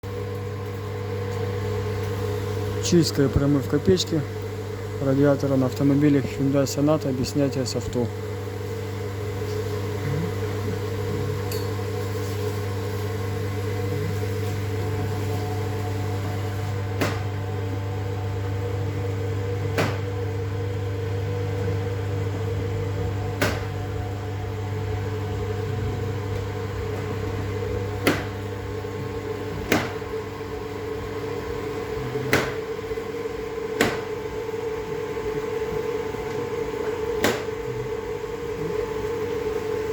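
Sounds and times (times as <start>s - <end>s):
machine electric hum: 0.0s - 39.9s.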